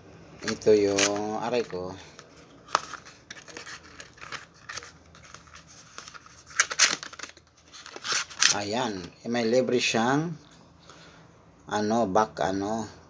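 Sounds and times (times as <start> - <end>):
packaging scraping and crinkling: 0.3 - 9.1.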